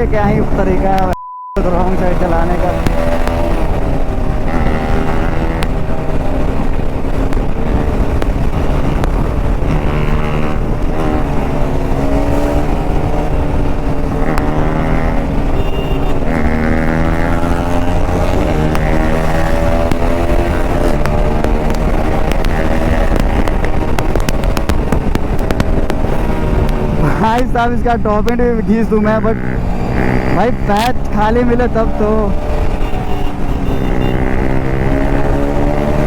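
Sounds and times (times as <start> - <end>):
motorcycle engine accelerating: 0.0 - 36.0
wind rushing: 16.3 - 36.0.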